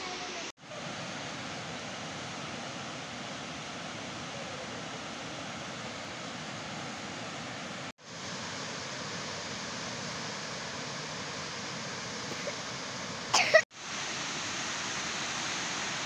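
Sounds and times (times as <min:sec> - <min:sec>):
running water rushing: 0:00.0 - 0:16.0
person coughing: 0:12.3 - 0:12.6, 0:13.4 - 0:13.6.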